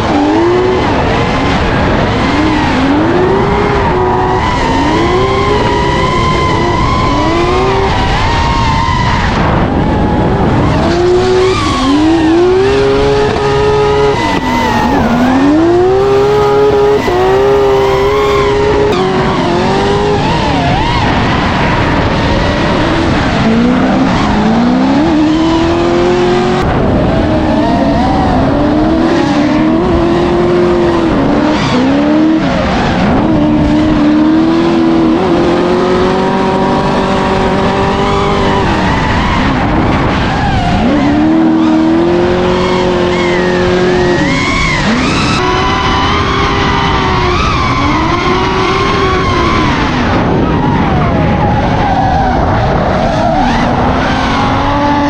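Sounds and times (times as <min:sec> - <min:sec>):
car engines revving hard: 0:00.0 - 0:55.0
tyre squeal: 0:10.6 - 0:22.3, 0:42.4 - 0:51.0.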